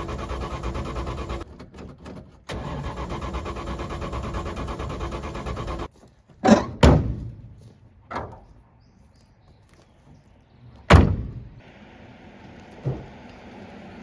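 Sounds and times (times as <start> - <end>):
engine running: 0.0 - 1.4, 2.5 - 5.9.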